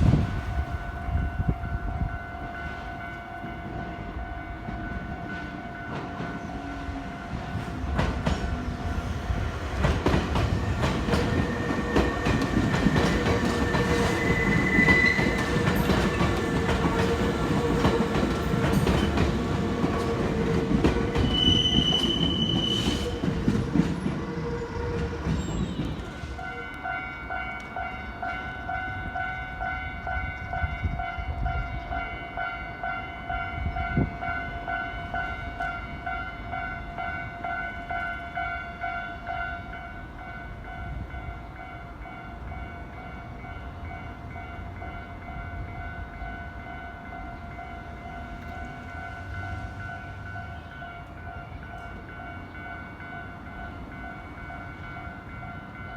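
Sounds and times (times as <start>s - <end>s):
level-crossing warning bell ringing: 0.8s - 9.4s, 10.7s - 55.9s
train wheels clacking over rail joints: 9.8s - 26.2s.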